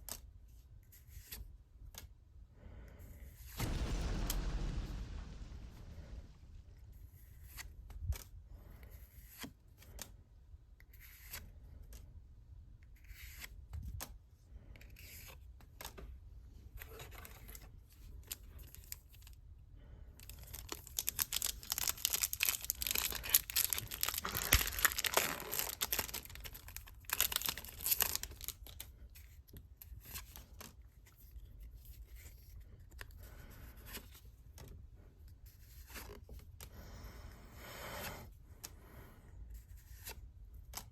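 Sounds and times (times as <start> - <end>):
card packaging clicks and rustles: 20.3 - 28.9
packaging torn and crinkled: 20.3 - 28.9.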